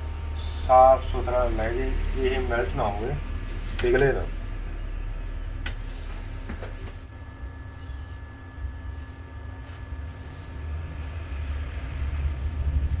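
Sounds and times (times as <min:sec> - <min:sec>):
hot air station blowing: 0:00.0 - 0:07.2, 0:08.2 - 0:11.6.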